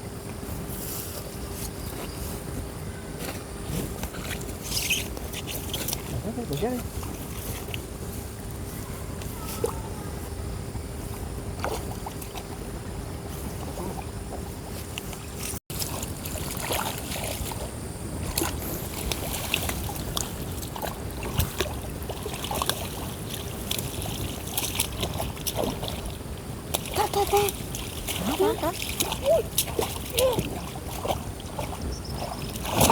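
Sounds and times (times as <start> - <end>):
water hissing and splashing: 15.8 - 32.9.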